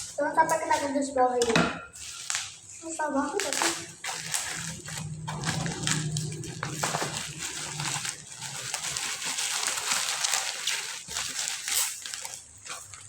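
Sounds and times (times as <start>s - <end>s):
plastic and cardboard rustling: 0.0s - 13.0s
scissors cutting packaging: 3.3s - 13.0s.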